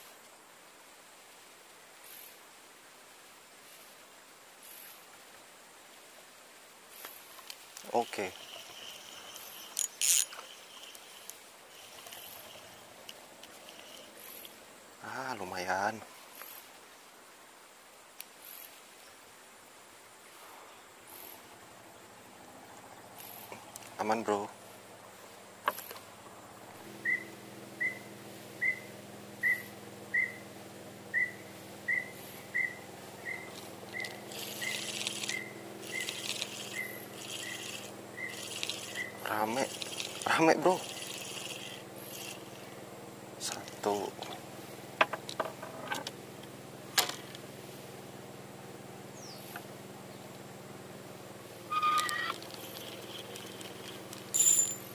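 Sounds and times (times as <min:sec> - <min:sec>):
background hiss: 0:00.0 - 0:54.9
insects chirring: 0:06.9 - 0:47.8, 0:48.6 - 0:54.8
steady low hum: 0:20.4 - 0:54.9
animal's short high call: 0:51.7 - 0:52.4.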